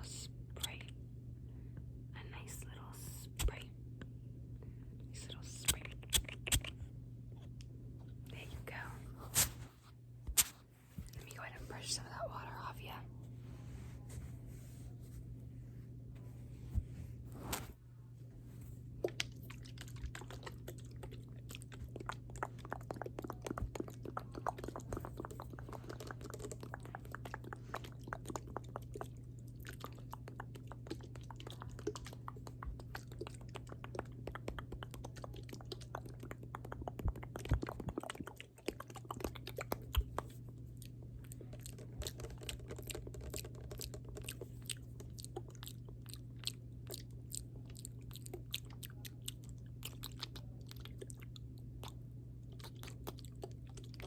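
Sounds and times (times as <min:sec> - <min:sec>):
wet mouth clicks and smacks: 0:05.5 - 0:06.8, 0:19.0 - 0:54.0.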